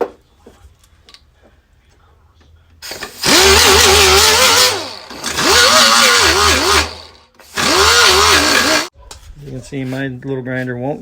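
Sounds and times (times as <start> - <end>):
grinder grinding metal: 2.8 - 8.9.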